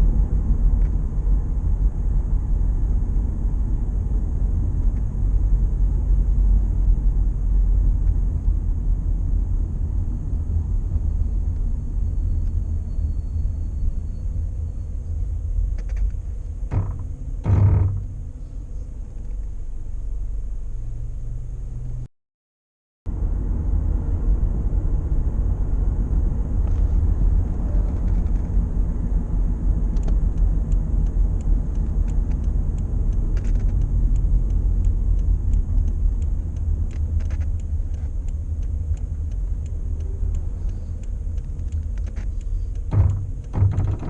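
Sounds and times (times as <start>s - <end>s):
low road rumble in car cabin: 0.0s - 22.1s, 23.1s - 44.0s
sharp brake clicks: 30.0s - 44.0s.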